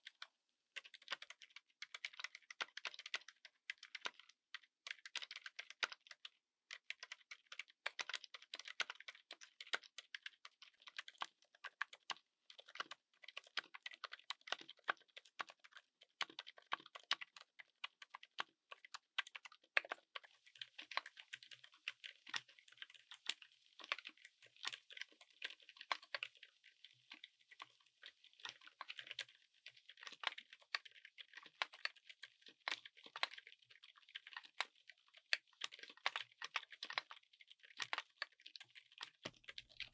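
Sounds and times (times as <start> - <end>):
soft keyboard keystrokes: 17.1 - 37.2
faint hiss: 20.3 - 30.3.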